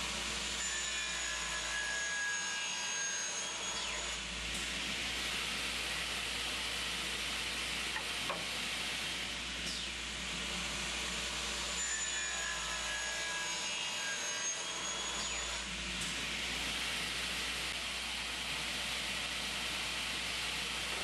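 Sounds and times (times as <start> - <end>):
miter saw cutting metal: 0.0 - 7.7, 11.2 - 17.5
high ringing whine: 0.1 - 4.4, 11.5 - 17.7.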